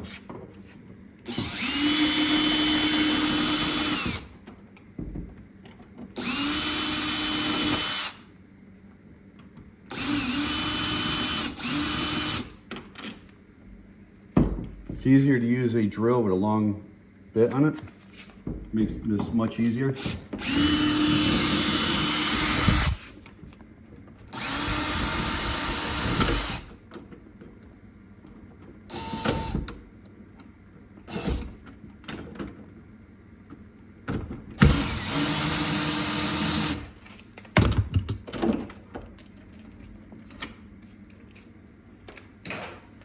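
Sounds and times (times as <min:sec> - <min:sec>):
power drill running: 0:01.3 - 0:04.3, 0:06.2 - 0:08.2, 0:09.9 - 0:12.5, 0:20.0 - 0:23.1, 0:24.3 - 0:26.7, 0:28.9 - 0:29.6, 0:34.6 - 0:37.0.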